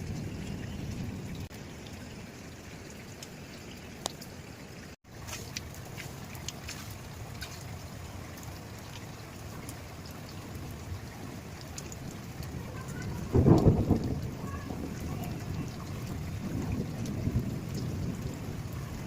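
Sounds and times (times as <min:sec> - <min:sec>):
thunder rumbling: 0:00.0 - 0:01.5, 0:12.1 - 0:19.0
steady rain falling: 0:00.0 - 0:19.0.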